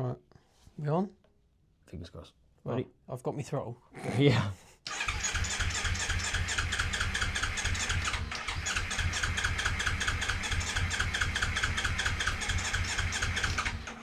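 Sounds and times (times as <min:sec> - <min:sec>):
motorcycle starter motor cranking: 0:04.9 - 0:14.0.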